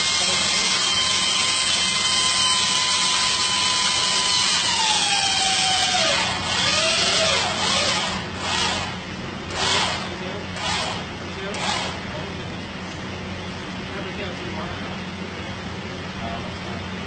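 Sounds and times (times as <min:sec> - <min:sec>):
electric drill running under load: 0:00.0 - 0:12.1.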